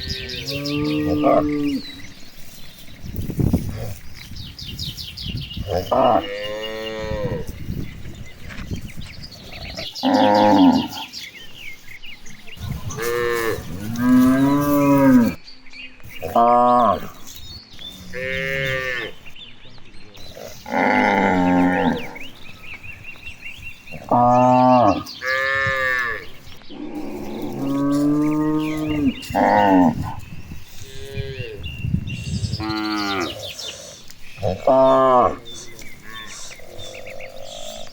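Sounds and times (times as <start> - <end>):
cattle mooing: 0.0 - 2.2, 9.8 - 11.1, 12.8 - 15.4, 18.0 - 19.3, 20.3 - 22.3, 24.0 - 31.6, 32.6 - 37.9.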